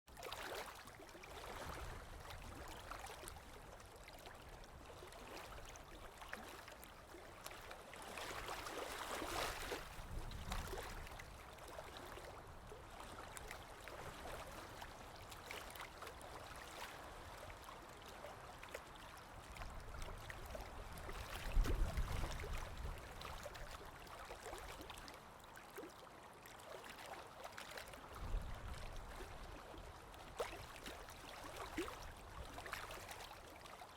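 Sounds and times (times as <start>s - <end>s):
small ocean waves lapping: 0.1s - 33.9s
heavy deep water slosh: 0.2s - 3.4s, 7.5s - 14.8s, 20.9s - 25.1s.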